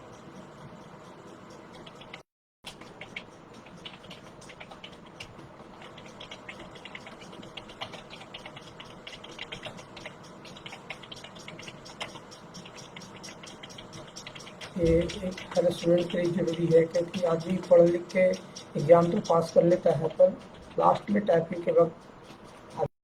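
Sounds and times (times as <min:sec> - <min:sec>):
fast keyboard typing: 0:01.5 - 0:22.9.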